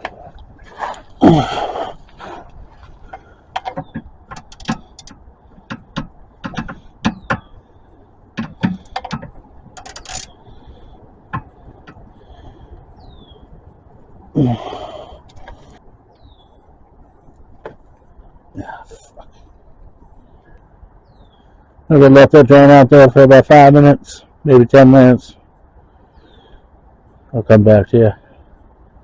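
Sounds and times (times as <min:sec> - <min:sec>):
ratchet clicking: 0:03.6 - 0:07.4.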